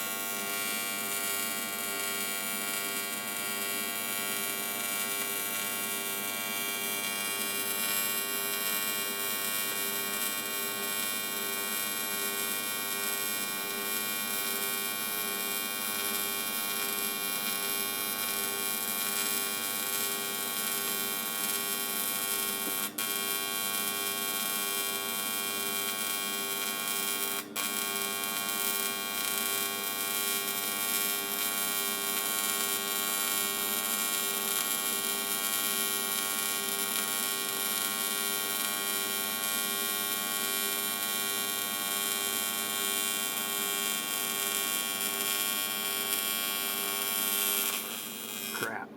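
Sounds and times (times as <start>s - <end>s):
welding arc buzzing: 0.1s - 33.7s, 34.5s - 39.6s, 42.5s - 48.8s.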